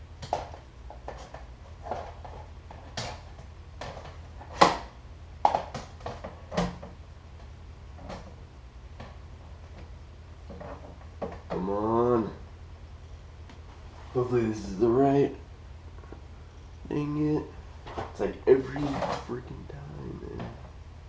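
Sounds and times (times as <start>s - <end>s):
steady low hum: 0.0s - 21.0s
objects knocking and clicking: 0.2s - 7.0s.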